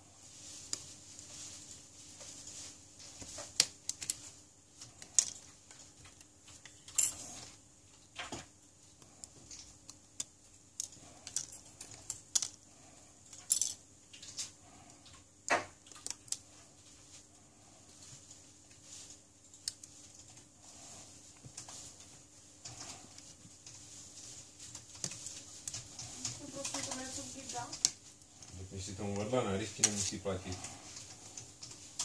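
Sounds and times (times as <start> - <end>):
faint steady hum: 0.0 - 32.0
small tools and parts clicking: 4.8 - 7.3, 9.2 - 12.6, 13.3 - 14.5.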